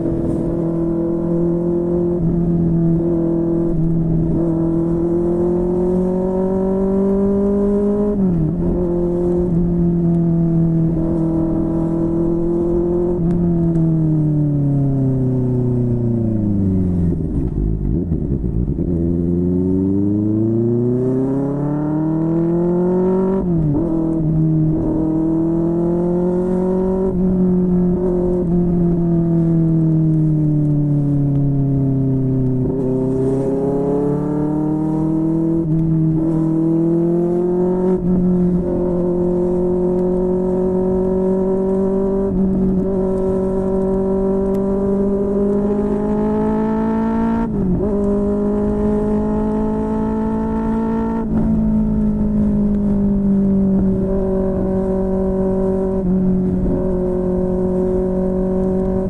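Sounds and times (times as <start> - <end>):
motorcycle engine revving: 15.3 - 30.5, 31.1 - 59.0.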